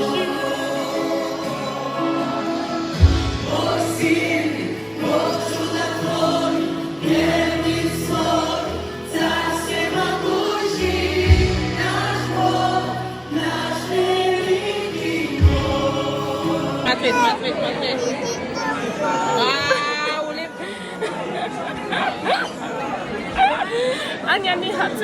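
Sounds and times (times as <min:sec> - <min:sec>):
choir singing with instruments: 0:00.0 - 0:17.7
deep beat: 0:11.3 - 0:12.3, 0:15.4 - 0:16.0.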